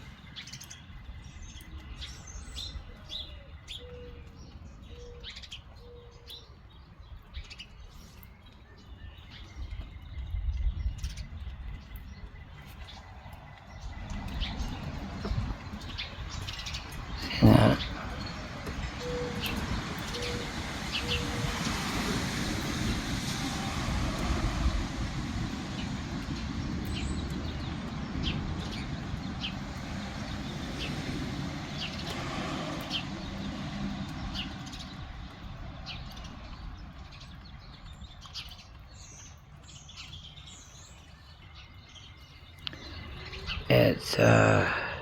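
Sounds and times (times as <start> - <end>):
wind rumbling on microphone: 6.7 - 39.6.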